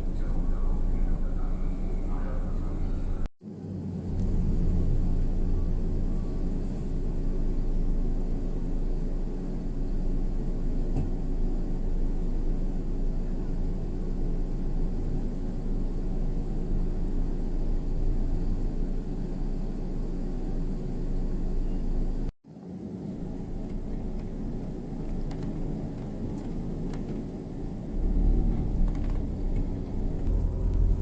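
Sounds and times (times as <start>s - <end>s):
low vehicle rumble: 0.0s - 31.0s.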